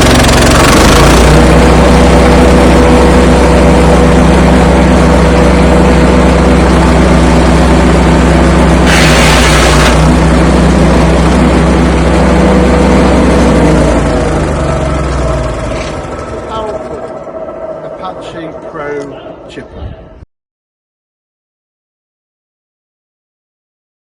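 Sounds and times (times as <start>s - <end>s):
petrol engine running: 0.0s - 20.1s
hiss: 8.9s - 10.0s.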